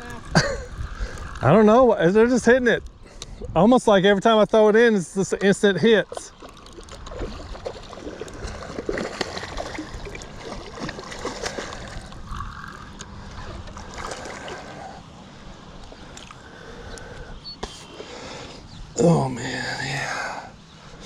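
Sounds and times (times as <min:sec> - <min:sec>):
water splashing and sloshing: 0:05.3 - 0:16.5.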